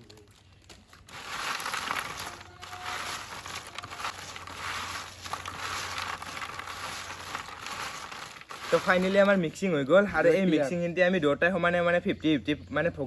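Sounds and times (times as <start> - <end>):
potato chips crunching by hand: 0.1 - 9.5.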